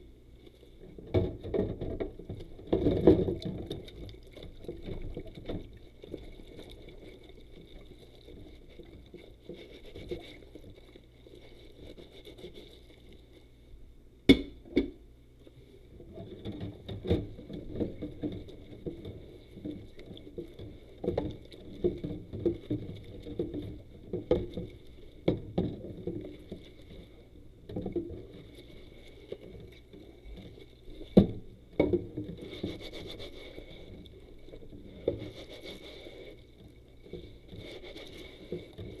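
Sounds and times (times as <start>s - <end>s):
gloved hands scrubbing dishes: 32.2s - 39.0s.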